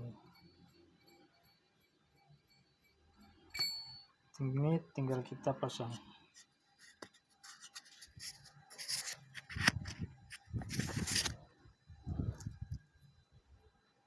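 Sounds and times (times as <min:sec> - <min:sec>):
engine parts rubbing and scraping: 0:06.4 - 0:11.4.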